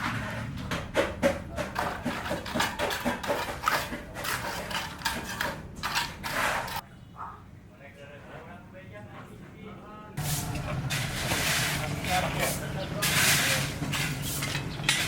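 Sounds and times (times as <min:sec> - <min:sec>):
building work knocks and scraping: 0:00.0 - 0:06.8, 0:10.2 - 0:15.0.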